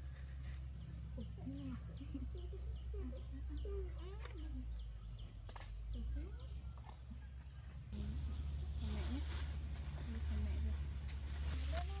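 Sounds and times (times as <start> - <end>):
birds chirping: 8.0 - 12.0
steady low hum: 8.0 - 12.0.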